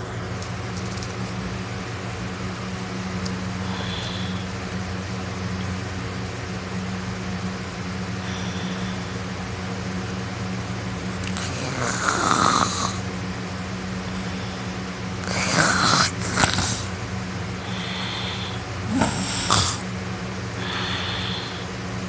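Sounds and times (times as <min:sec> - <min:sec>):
steady hum: 0:00.0 - 0:22.0
person snoring loudly: 0:03.6 - 0:04.5, 0:08.2 - 0:09.2, 0:11.2 - 0:13.1, 0:14.1 - 0:17.0, 0:17.6 - 0:19.9, 0:20.6 - 0:21.7.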